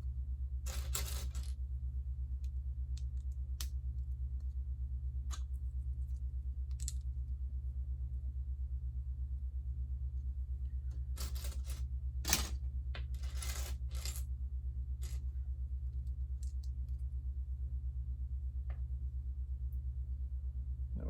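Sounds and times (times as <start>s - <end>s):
steady low hum: 0.0s - 21.0s
plastic pieces rattling: 0.7s - 1.5s, 13.2s - 14.2s.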